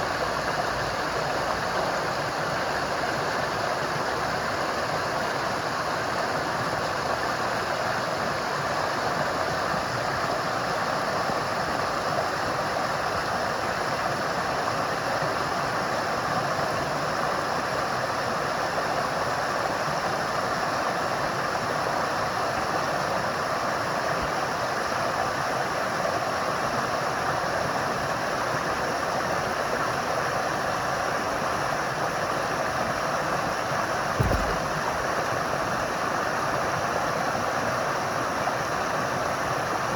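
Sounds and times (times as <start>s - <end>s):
low thump: 34.2s - 35.3s
flowing water rushing: 34.2s - 35.4s.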